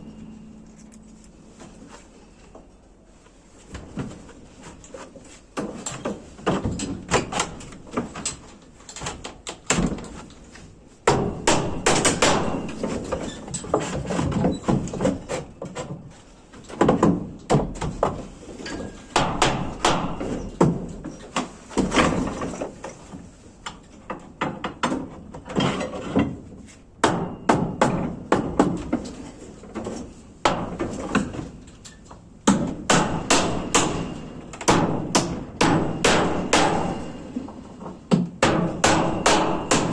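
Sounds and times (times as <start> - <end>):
hammer striking wood: 11.1 - 13.0, 19.2 - 20.4, 30.4 - 31.3, 32.5 - 37.4, 38.1 - 39.9.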